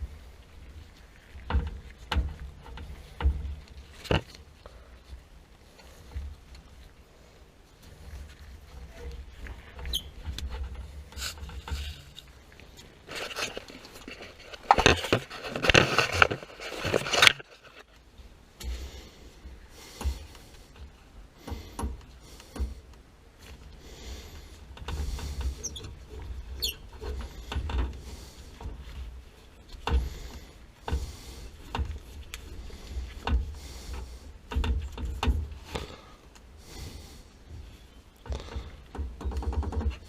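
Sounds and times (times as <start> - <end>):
high squeaks: 9.8 - 10.2, 25.5 - 27.1
tools knocking and scraping on pipes: 29.8 - 36.1, 38.3 - 40.0.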